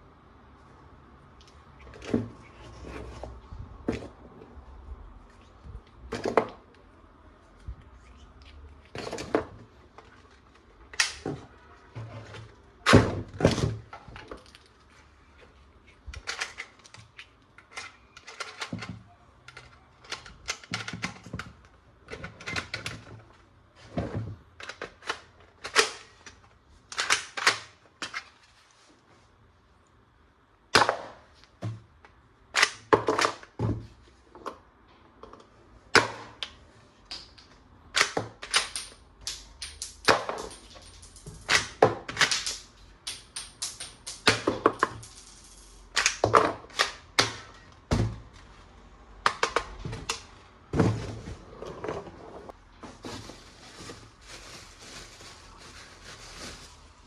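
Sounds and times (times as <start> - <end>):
plastic parts clicking and snapping: 10.8 - 11.4, 15.9 - 23.2, 24.6 - 28.3, 35.3 - 45.1, 45.9 - 47.8.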